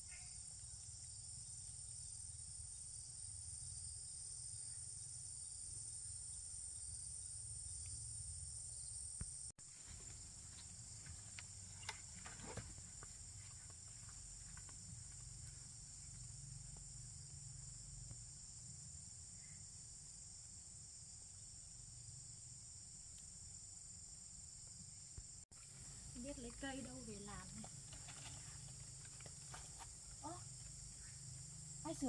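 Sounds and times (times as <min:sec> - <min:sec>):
insects chirring: 0:00.0 - 0:32.0
faint clicks and rustles: 0:25.6 - 0:31.4.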